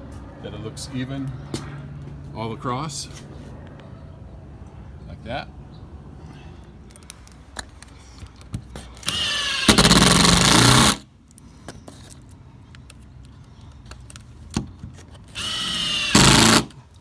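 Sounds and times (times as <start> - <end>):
cordless drill driving screws: 9.0 - 11.0, 15.3 - 16.8.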